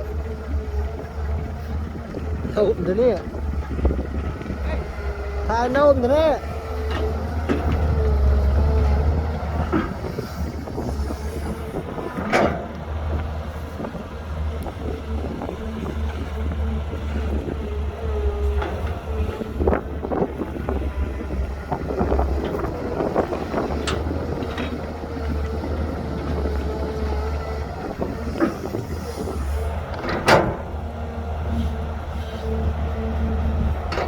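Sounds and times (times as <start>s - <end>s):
machinery knocks and clanks: 0.0s - 32.0s, 32.9s - 34.0s
diesel engine rumbling: 0.0s - 34.0s.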